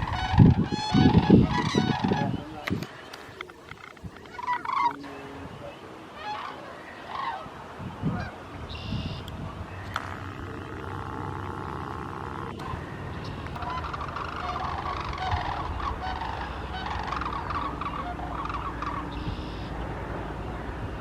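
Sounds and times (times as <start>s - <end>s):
cranes honking: 0.0s - 21.0s
steady droning tone: 9.0s - 21.0s.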